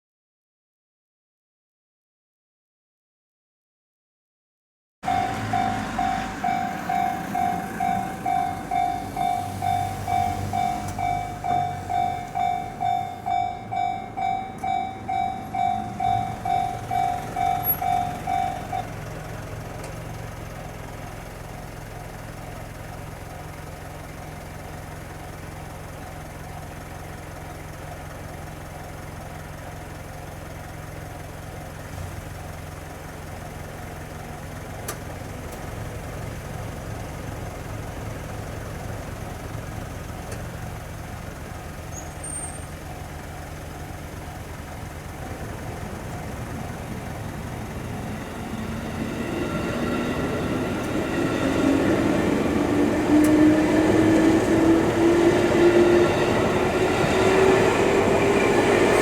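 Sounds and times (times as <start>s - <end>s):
level crossing warning bell ringing: 5.0s - 19.5s, 44.7s - 59.0s.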